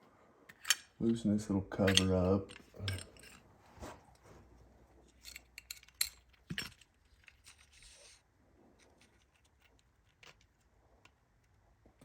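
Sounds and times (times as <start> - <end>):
sander parts clicking and knocking: 1.8 - 3.4.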